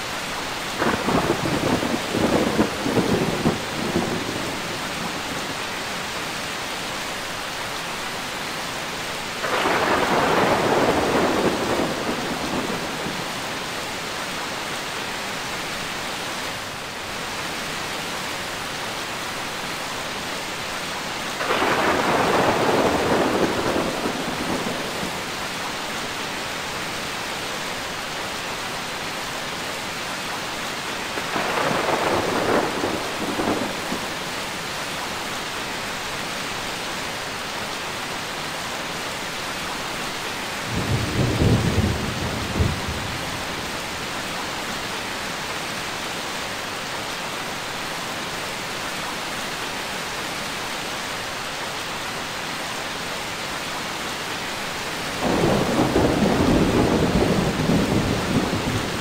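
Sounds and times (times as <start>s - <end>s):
heavy rainfall: 0.0s - 59.0s
thunder rumbling: 0.8s - 5.4s, 9.4s - 13.5s, 21.4s - 25.3s, 31.2s - 34.1s, 40.7s - 44.0s, 55.2s - 59.0s.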